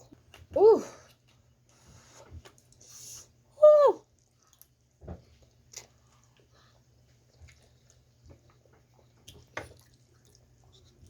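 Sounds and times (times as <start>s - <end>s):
person chewing food: 4.2s - 11.0s.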